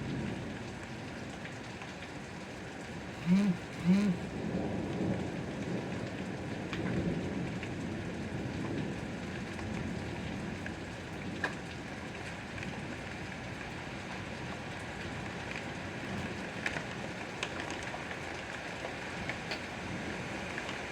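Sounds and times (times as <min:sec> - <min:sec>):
steady rain patter: 0:00.0 - 0:20.9.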